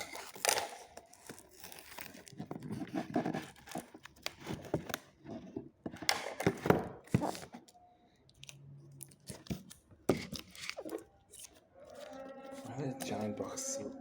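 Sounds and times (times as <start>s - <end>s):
packaging tearing and crinkling: 0.0s - 5.0s, 8.4s - 13.4s.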